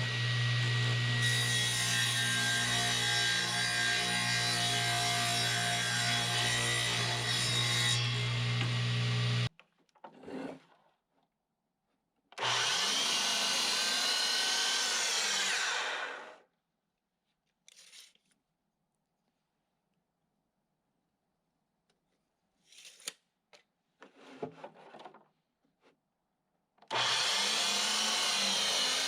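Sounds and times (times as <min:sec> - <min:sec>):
power saw cutting wood: 0:00.0 - 0:09.5, 0:12.4 - 0:16.4, 0:26.9 - 0:29.0.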